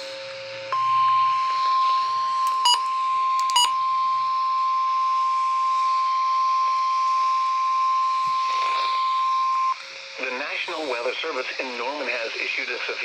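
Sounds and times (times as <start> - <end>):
steady high warning tone: 0.1 - 11.0
short sharp beeps: 2.5 - 3.8.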